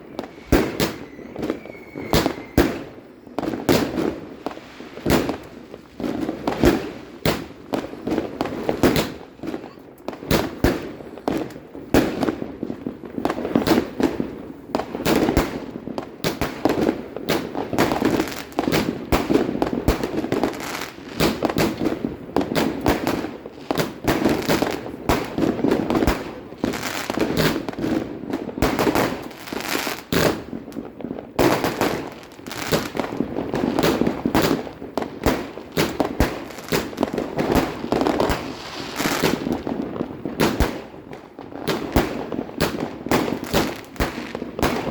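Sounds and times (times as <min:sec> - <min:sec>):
fireworks banging and crackling: 0:00.0 - 0:44.9.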